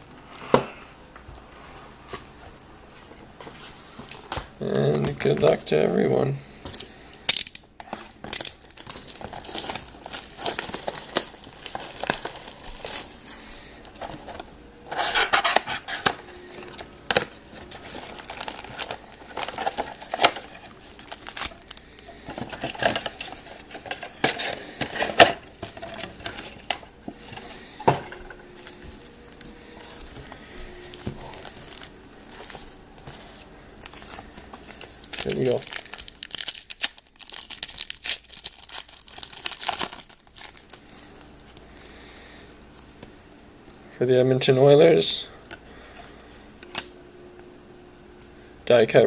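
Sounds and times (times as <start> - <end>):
plastic wrapping crinkling and tearing: 6.7 - 27.6, 28.2 - 41.6.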